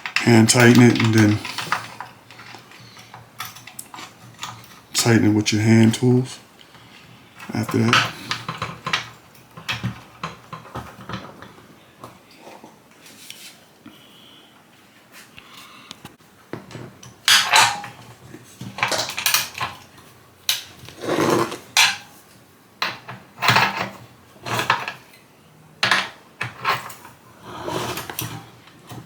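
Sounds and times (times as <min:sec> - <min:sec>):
metal tools clinking and rattling: 0:00.0 - 0:06.2, 0:16.7 - 0:18.0, 0:18.8 - 0:19.9.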